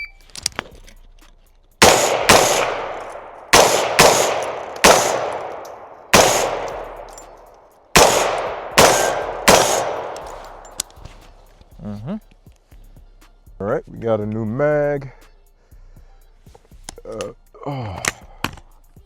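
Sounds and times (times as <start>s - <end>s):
rifle shots echoing: 1.8s - 11.0s.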